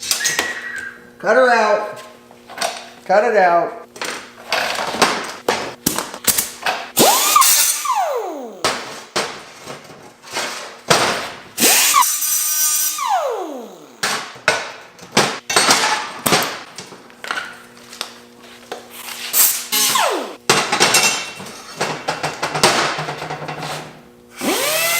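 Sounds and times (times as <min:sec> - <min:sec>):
angle grinder spinning: 0:07.0 - 0:08.9, 0:11.6 - 0:14.0, 0:19.4 - 0:20.4, 0:24.4 - 0:24.9.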